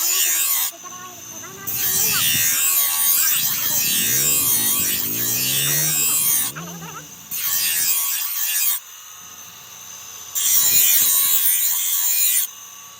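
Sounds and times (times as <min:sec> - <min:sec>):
person's voice: 0:00.7 - 0:07.4.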